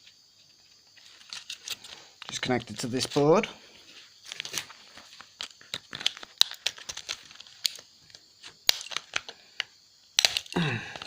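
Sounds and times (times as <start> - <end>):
plastic casing snapping and clicking: 5.4 - 11.0.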